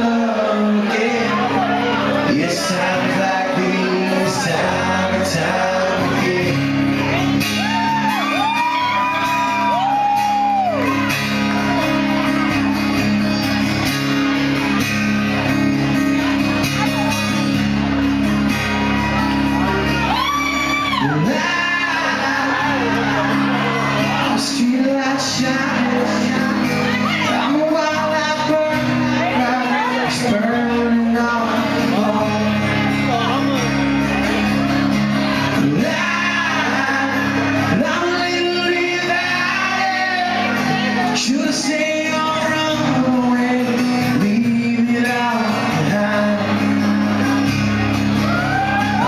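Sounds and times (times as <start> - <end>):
live band music: 0.0 - 38.2
crowd shouting and whooping: 0.0 - 49.0
singer holding long notes: 18.5 - 49.0.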